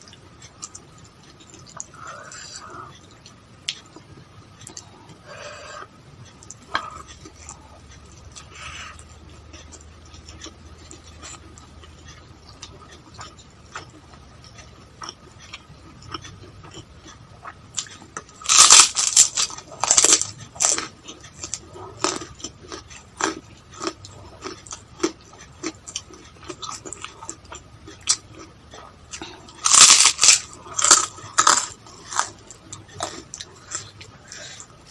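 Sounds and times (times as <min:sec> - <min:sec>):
chewing: 0:00.0 - 0:34.9
loud crunching bites: 0:17.8 - 0:27.1, 0:29.5 - 0:33.9.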